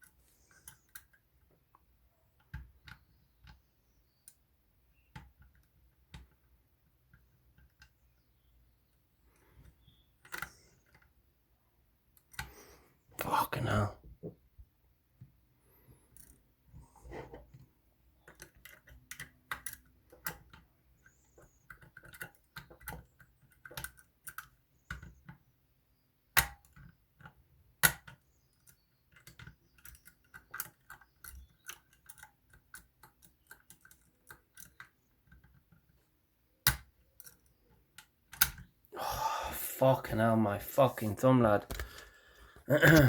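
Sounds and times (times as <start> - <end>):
lock picks clicking in lock: 18.2 - 25.4, 26.3 - 36.0, 36.6 - 38.7.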